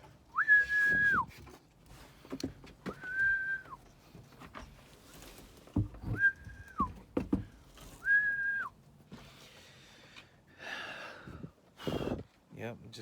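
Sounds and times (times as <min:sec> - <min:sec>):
person whistling short notes: 0:00.4 - 0:01.3, 0:03.0 - 0:03.8, 0:06.1 - 0:06.9, 0:08.0 - 0:08.7.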